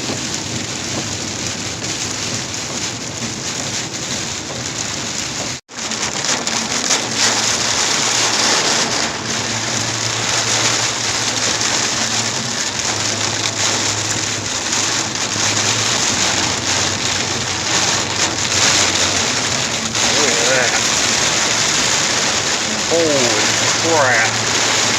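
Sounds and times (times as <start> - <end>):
heavy rain pelting a car: 0.0 - 24.9
low hum of car: 4.4 - 24.9.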